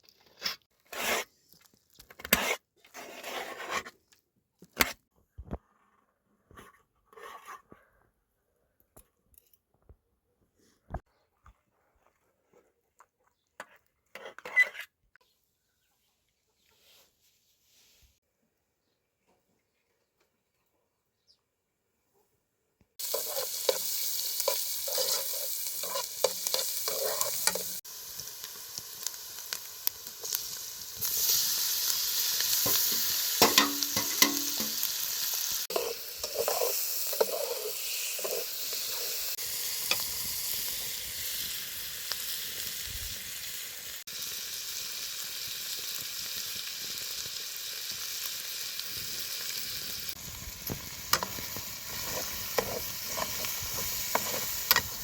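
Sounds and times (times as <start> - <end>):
stirring clicks and scrapes: 0.0 - 5.6, 23.0 - 27.8, 35.6 - 39.3, 50.6 - 55.0
food sizzling in a pan: 23.0 - 55.0.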